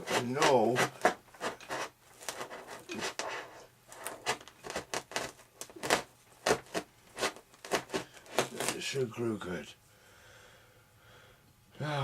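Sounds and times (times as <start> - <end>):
hobby knife blade scraping: 0.0 - 8.8.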